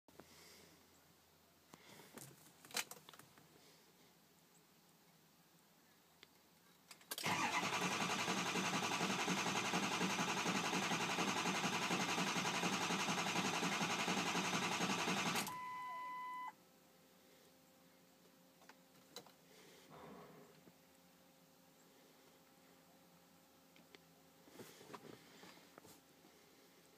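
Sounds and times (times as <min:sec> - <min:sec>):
engine starter cranking: 0:07.1 - 0:15.6
electronic beep: 0:15.5 - 0:16.5.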